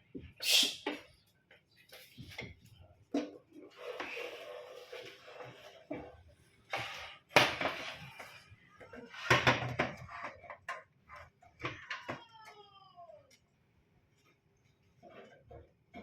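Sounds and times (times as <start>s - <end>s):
hard objects knocking and clattering: 1.5s - 12.4s.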